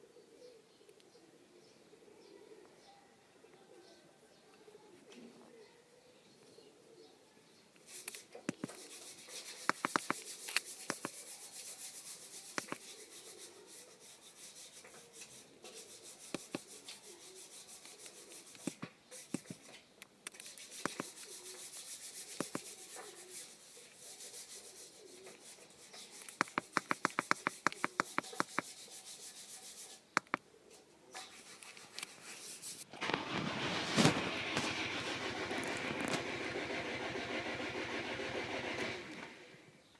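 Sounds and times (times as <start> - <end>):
steady rubbing: 7.9 - 19.7, 20.4 - 30.4, 31.2 - 39.5
sharp metallic clicks: 9.6 - 11.2, 26.2 - 28.7, 30.1 - 30.4.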